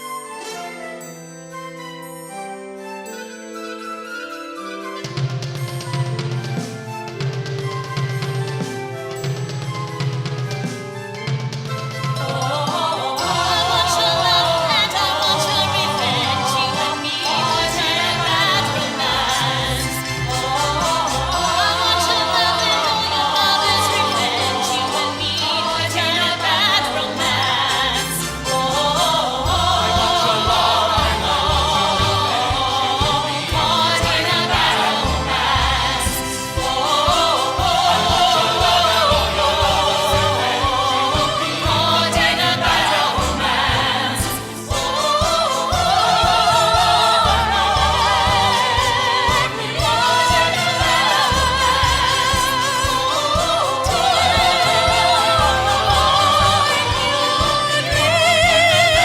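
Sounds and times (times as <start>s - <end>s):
person singing with vibrato: 12.2s - 59.0s.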